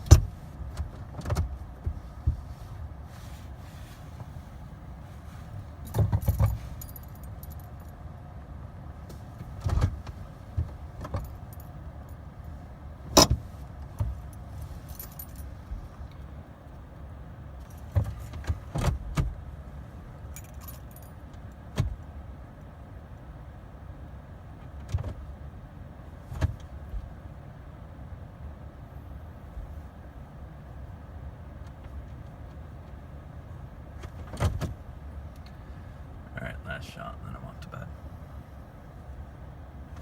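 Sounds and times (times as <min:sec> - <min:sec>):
steady low hum: 0:00.0 - 0:40.0
keys jangling and clicking: 0:05.8 - 0:07.9, 0:14.2 - 0:15.8, 0:20.3 - 0:21.2.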